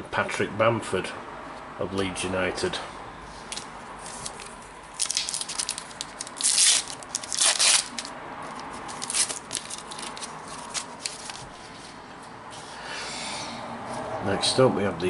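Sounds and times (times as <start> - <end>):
card pack wrapper tearing: 4.1 - 8.1, 8.7 - 11.5.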